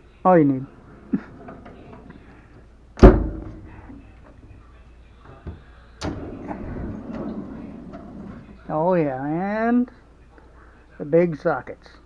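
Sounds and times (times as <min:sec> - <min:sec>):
metal drawer slammed shut: 0:03.0 - 0:03.8
low rolling rumble: 0:06.1 - 0:08.6.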